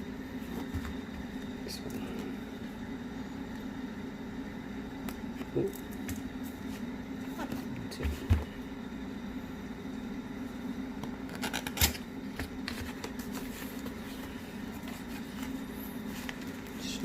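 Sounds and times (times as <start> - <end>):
steady low hum: 0.0 - 17.0
handling packaging boxes: 11.2 - 17.0.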